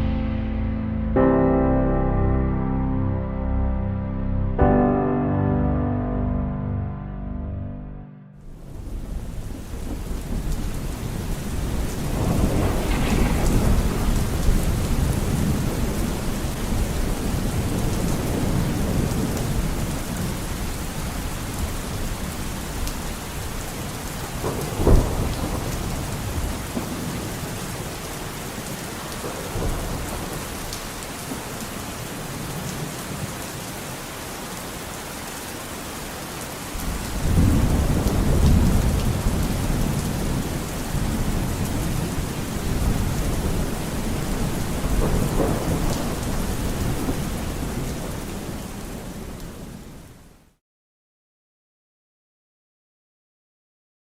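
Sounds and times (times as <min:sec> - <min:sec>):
low thunder rumbles: 0:08.4 - 0:33.3, 0:36.8 - 0:50.0
steady rain: 0:08.4 - 0:50.6
sharp thunderclap: 0:08.6 - 0:19.8, 0:24.3 - 0:27.9, 0:29.2 - 0:30.6, 0:36.8 - 0:48.3.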